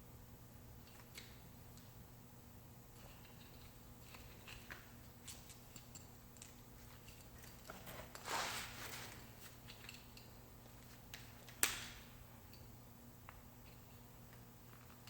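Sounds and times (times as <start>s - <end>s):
rustling scrape: 7.7s - 9.6s.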